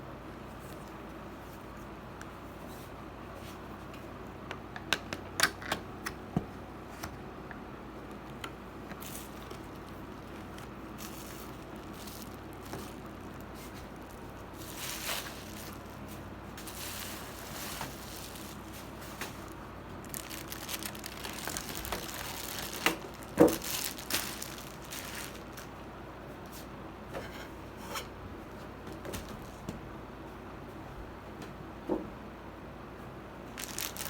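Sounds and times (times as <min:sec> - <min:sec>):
packaging rustling and crinkling: 0:08.1 - 0:25.8, 0:33.5 - 0:34.0.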